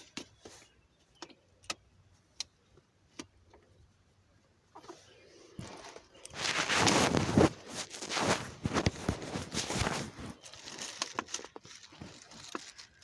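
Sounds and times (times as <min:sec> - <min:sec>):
rustling and crinkling: 0:04.8 - 0:13.0.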